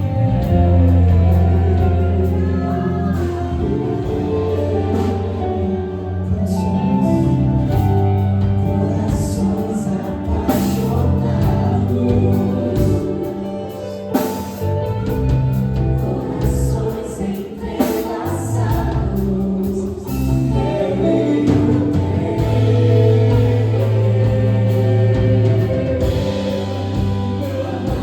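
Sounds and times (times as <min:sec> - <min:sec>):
bass: 0:00.0 - 0:28.0
keyboard chords: 0:00.0 - 0:28.0
singers holding long notes: 0:15.8 - 0:28.0.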